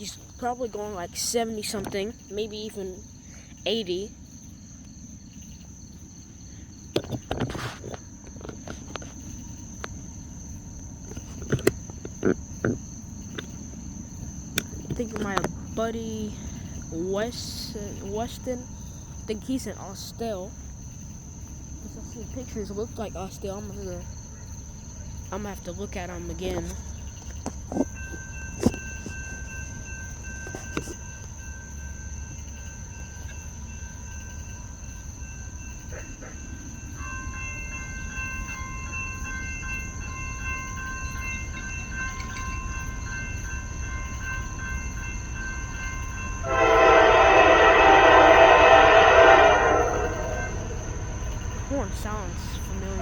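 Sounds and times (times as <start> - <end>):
low steady rumble: 9.2 - 53.0
train horn: 46.4 - 51.7.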